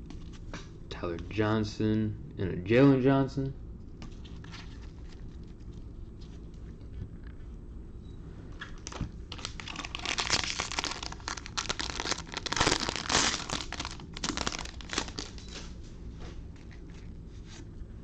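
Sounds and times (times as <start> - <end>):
plastic wrapper crinkling: 8.8 - 15.6.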